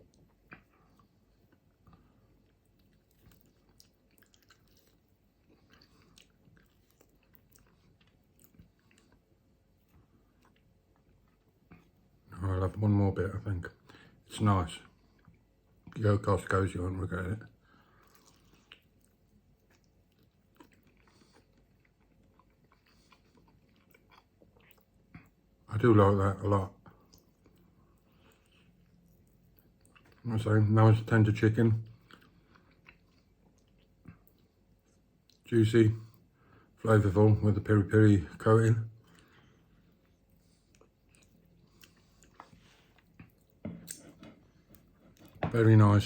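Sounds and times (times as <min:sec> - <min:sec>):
biting clicks and mouth sounds: 0:00.0 - 0:12.0, 0:17.9 - 0:25.5
person chewing food: 0:00.0 - 0:12.3, 0:17.5 - 0:25.7, 0:26.8 - 0:30.2, 0:31.8 - 0:35.5, 0:39.0 - 0:45.5.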